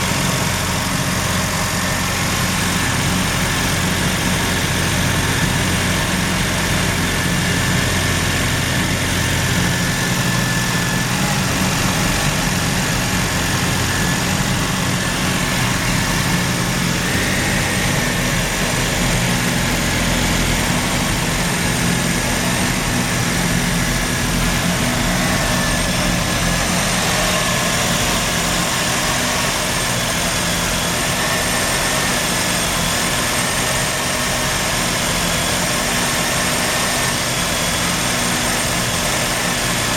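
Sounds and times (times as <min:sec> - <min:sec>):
rotary engine idling roughly: 0:00.0 - 0:39.9.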